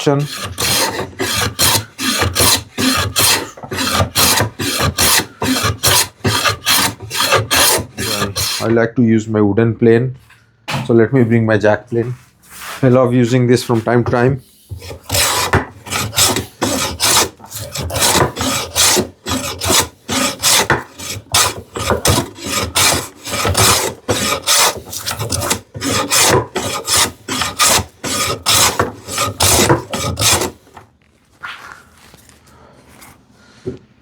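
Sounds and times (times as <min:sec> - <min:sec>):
hand plane shaving wood: 0:00.0 - 0:08.7, 0:12.6 - 0:30.8
faint handling sounds: 0:30.8 - 0:33.9.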